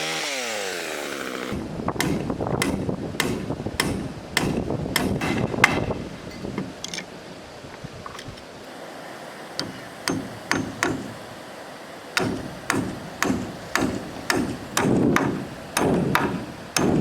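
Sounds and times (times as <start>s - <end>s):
hammer striking wood: 2.0s - 6.0s, 9.6s - 11.2s, 12.2s - 17.0s.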